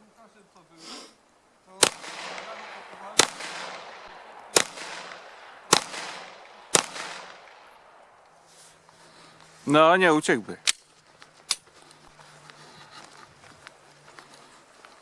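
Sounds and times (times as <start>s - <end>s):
gunshots with echo: 1.8s - 8.0s.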